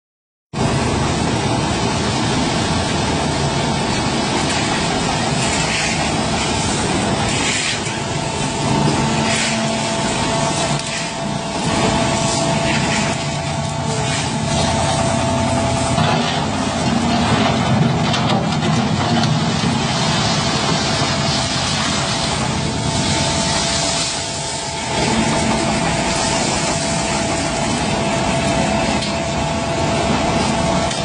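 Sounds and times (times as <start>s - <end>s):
pump engine hum with whine: 0.6s - 31.0s
hissing surge: 20.9s - 29.8s.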